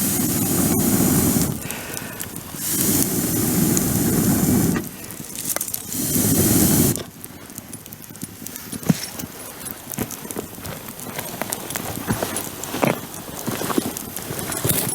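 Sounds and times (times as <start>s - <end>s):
loud rushes of air: 0.0s - 7.1s
bonfire crackling: 0.0s - 14.9s.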